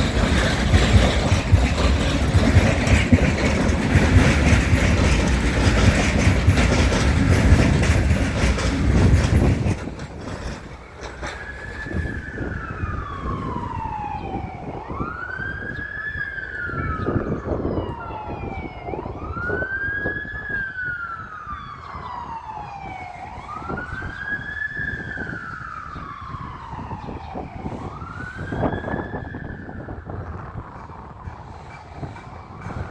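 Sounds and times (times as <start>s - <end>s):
emergency vehicle siren wailing: 0.0s - 10.2s, 10.8s - 32.9s
freight wagons rumbling past: 0.0s - 17.0s.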